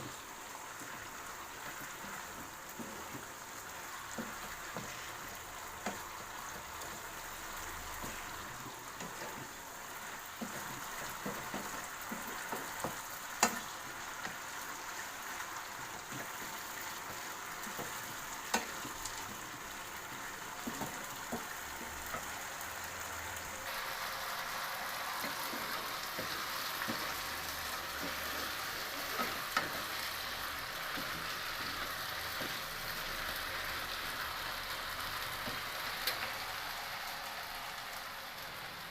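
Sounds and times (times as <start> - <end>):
food sizzling in a pan: 0.0 - 38.9
utensil clicking against pan: 10.4 - 14.4, 17.6 - 19.4.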